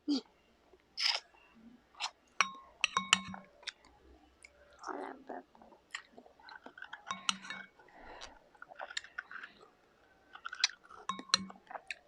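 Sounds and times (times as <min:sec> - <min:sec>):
chewing and biting: 0:08.0 - 0:12.0
small clicks and crackles: 0:08.1 - 0:12.0.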